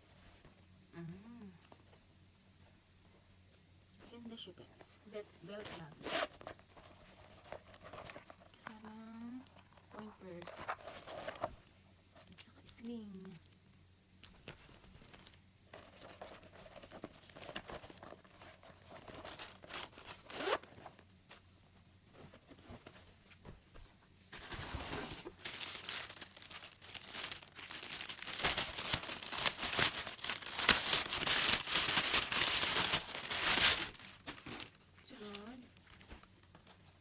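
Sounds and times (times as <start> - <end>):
packaging crinkling and tearing: 14.4 - 21.0, 24.4 - 36.7.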